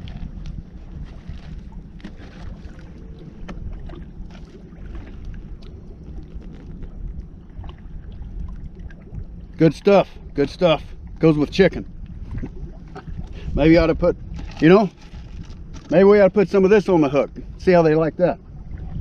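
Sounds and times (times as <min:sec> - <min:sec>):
wind rumble on microphone: 0:00.0 - 0:19.0
handling clicks and rustles: 0:14.4 - 0:16.1.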